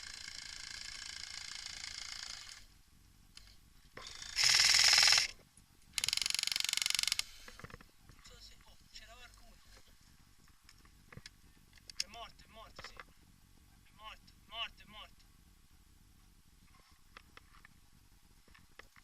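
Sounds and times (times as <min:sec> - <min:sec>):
airsoft rifle full-auto bursts: 0:00.0 - 0:02.7, 0:04.0 - 0:05.3, 0:06.0 - 0:07.3.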